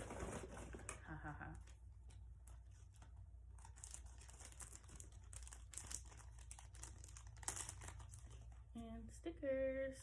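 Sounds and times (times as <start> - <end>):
packaging crinkling and tearing: 2.0 - 8.7.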